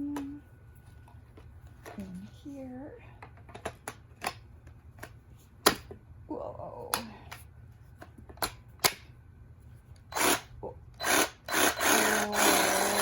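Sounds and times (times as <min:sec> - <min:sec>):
reciprocating saw motor bursts: 0:10.1 - 0:13.0.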